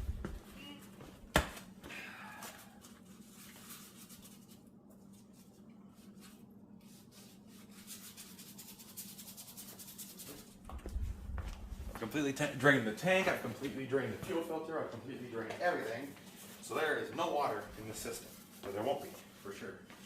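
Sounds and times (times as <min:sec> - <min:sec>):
low steady hum: 0:00.0 - 0:20.0
rubbing and scraping handling noises: 0:02.5 - 0:10.6, 0:15.6 - 0:20.0.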